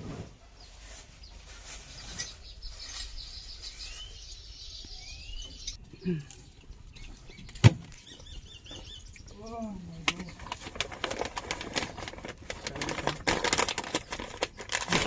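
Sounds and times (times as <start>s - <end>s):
birds chirping: 0.4s - 15.0s.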